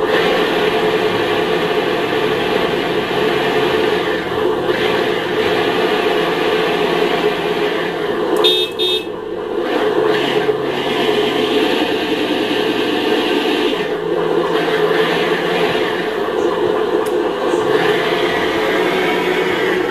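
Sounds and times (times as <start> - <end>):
simulated engine running: 0.0 - 19.9
horn toots: 8.4 - 9.2.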